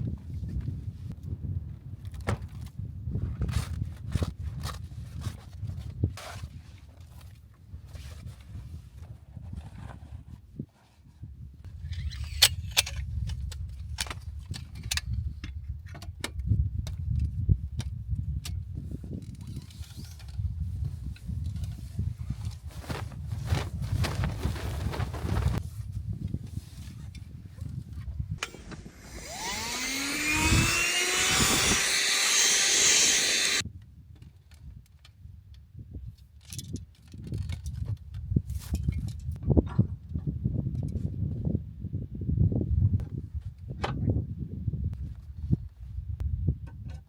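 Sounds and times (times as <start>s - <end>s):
motor whining: 28.4s - 33.6s.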